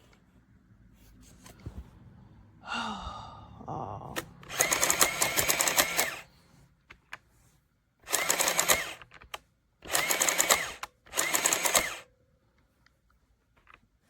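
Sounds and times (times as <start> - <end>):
thermal printer printing paper tape: 4.5 - 6.2, 9.9 - 12.0.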